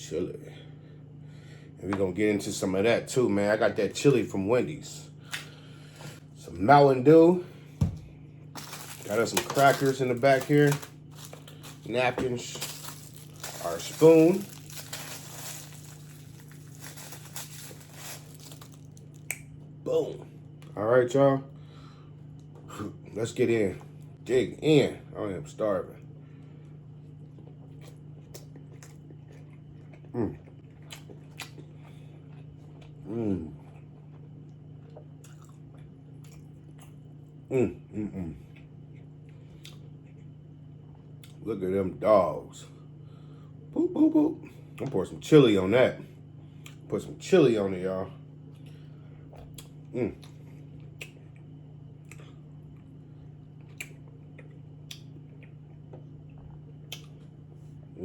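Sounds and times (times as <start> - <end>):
steady low hum: 0.0 - 58.0
low hum: 5.1 - 23.1
chewing with wet mouth clicks: 27.3 - 33.0, 33.6 - 37.0, 38.5 - 40.4, 41.2 - 41.4, 46.6 - 46.8, 48.5 - 52.9, 53.5 - 57.3
person humming mmm: 37.5 - 38.4.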